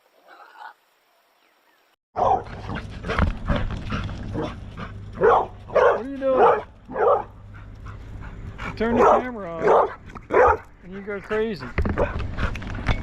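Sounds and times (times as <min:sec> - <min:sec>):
dog barking: 0:02.2 - 0:02.8, 0:05.2 - 0:07.4, 0:08.9 - 0:10.7
steady low hum: 0:02.2 - 0:13.0.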